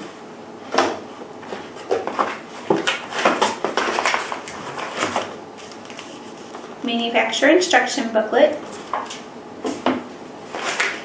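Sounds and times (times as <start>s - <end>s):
paper rustling and crinkling: 1.5s - 6.8s, 10.5s - 11.0s.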